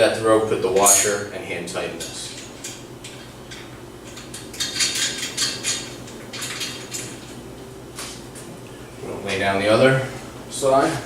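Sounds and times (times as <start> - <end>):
metal hardware clinking and scraping: 2.0 - 7.4.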